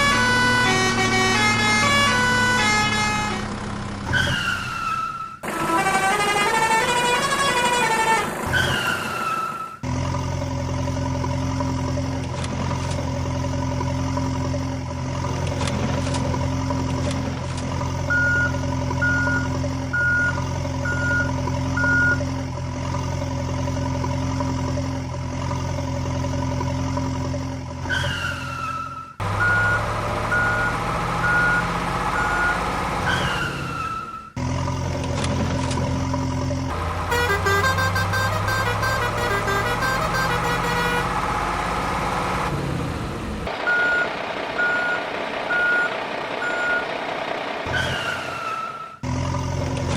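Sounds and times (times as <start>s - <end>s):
construction vehicle engine running: 0.0s - 7.5s, 9.8s - 27.9s, 29.2s - 49.9s
reversing alarm beeping: 18.1s - 22.3s, 29.2s - 34.4s, 43.6s - 46.9s.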